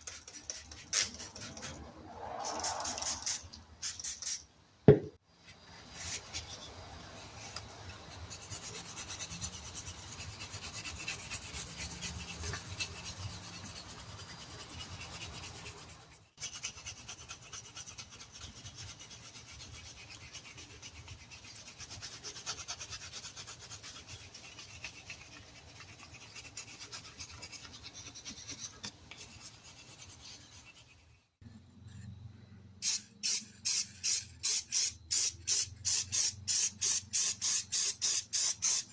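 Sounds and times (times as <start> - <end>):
metal rasping on sandpaper: 0.0 - 4.4, 5.8 - 31.4
spray paint hisses: 2.4 - 4.5, 32.8 - 38.9.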